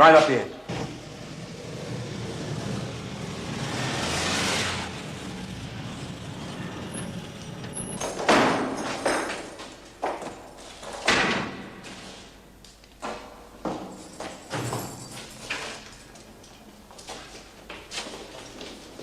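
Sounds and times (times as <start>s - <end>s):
vehicle passing: 0.8s - 8.1s.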